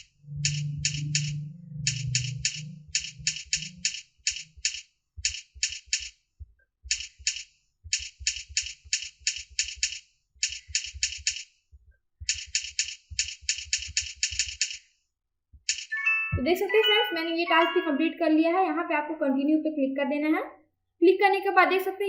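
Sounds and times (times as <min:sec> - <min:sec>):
keyboard typing clicks: 0:00.0 - 0:06.1, 0:06.9 - 0:11.5, 0:12.2 - 0:14.8, 0:15.6 - 0:17.0.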